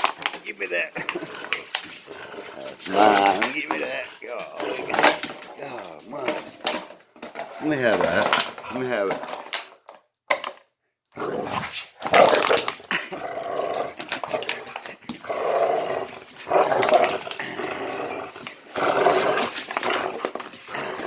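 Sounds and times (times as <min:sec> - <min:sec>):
dog growling: 0:00.8 - 0:06.9, 0:11.2 - 0:21.0.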